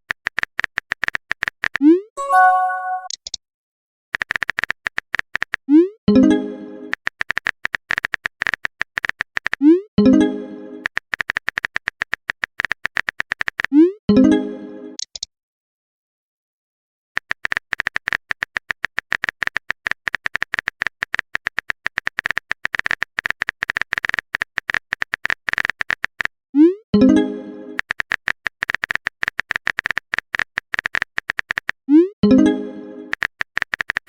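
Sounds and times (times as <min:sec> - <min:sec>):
rapid keyboard typing clicks: 0:00.1 - 0:01.8, 0:04.2 - 0:05.6, 0:06.9 - 0:09.6, 0:10.8 - 0:13.7, 0:17.2 - 0:26.3, 0:27.8 - 0:31.8, 0:33.1 - 0:34.0
message notification chime: 0:02.2 - 0:03.2.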